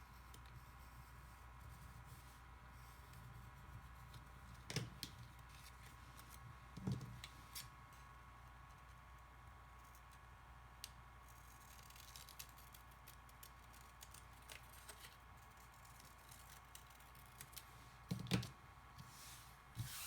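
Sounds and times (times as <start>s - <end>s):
scissors snipping paper: 11.3s - 18.4s.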